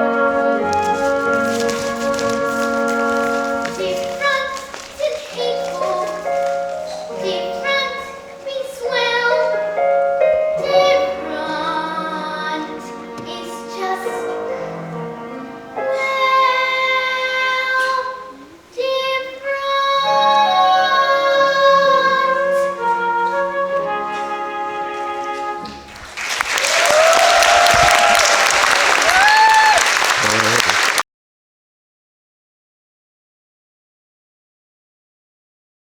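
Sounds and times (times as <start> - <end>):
instrumental accompaniment: 0.0 - 26.6
child singing: 3.7 - 14.8, 15.8 - 23.4.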